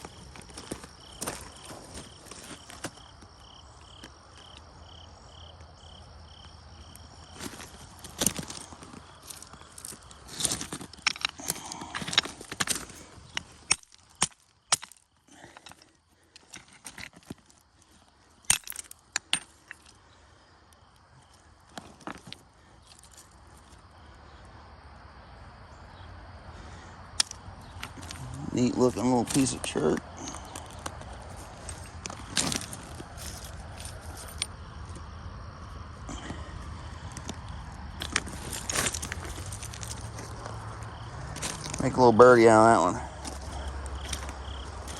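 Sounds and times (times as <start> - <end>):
footsteps crunching on gravel: 0.0 - 4.6, 6.4 - 19.0, 27.2 - 44.9.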